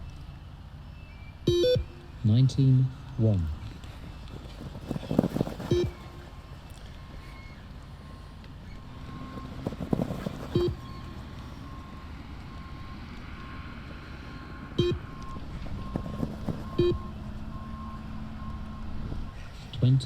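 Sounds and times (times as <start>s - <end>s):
short high beeps: 1.5s - 2.0s, 5.5s - 6.4s, 10.2s - 11.2s, 14.8s - 17.2s
loud short blips: 4.6s - 6.4s, 9.4s - 10.9s.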